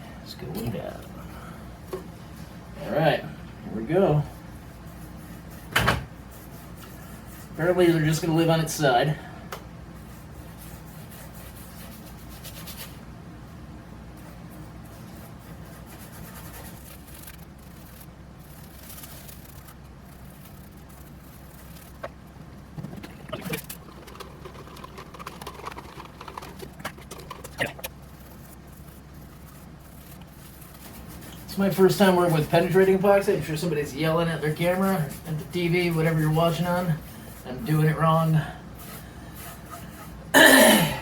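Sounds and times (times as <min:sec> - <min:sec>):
soft brushing on wood: 0:27.8 - 0:40.2.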